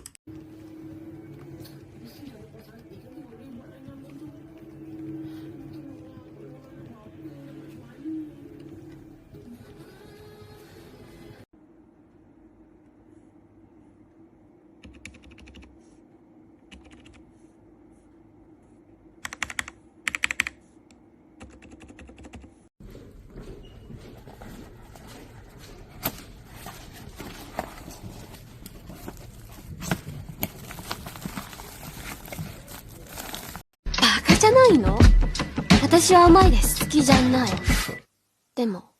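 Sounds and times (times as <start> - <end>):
typing on mechanical keyboard: 14.8 - 15.7, 16.7 - 17.2, 19.2 - 20.6, 21.4 - 22.5.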